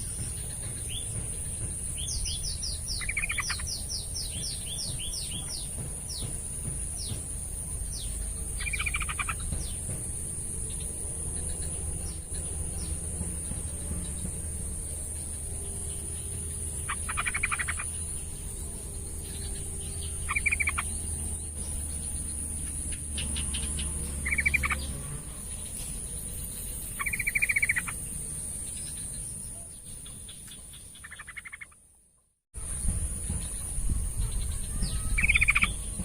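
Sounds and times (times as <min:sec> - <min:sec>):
bird chattering calls: 0:00.0 - 0:10.1, 0:15.3 - 0:25.8, 0:26.5 - 0:28.1, 0:28.8 - 0:31.8, 0:32.7 - 0:36.0
steady high background whine: 0:00.0 - 0:31.6.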